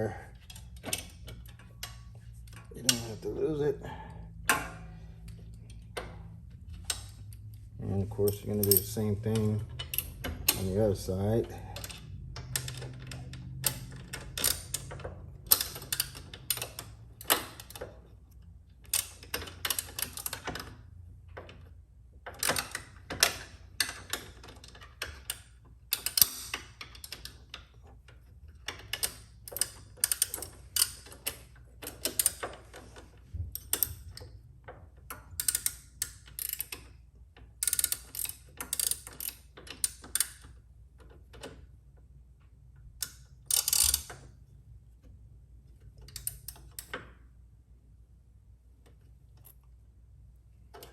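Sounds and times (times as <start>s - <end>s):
hand ratchet clicking: 0.0s - 17.9s, 22.3s - 32.8s, 33.5s - 34.3s, 35.0s - 41.4s, 43.0s - 44.2s.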